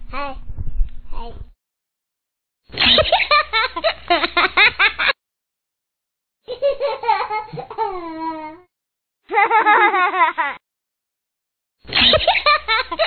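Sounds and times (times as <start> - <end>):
laughter with falling notes: 9.3 - 10.6
rapid giggling laughter: 11.9 - 13.0.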